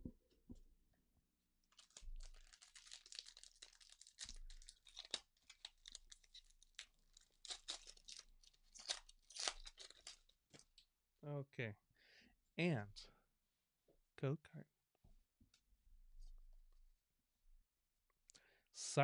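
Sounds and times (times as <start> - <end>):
foil wrapper tearing and crinkling: 1.7 - 10.6.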